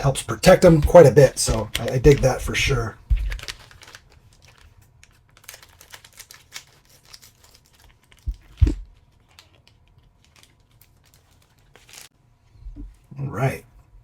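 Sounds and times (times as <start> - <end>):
dull thumps: 0.0 - 3.5, 8.3 - 8.9
plastic bags crinkling: 0.4 - 12.2.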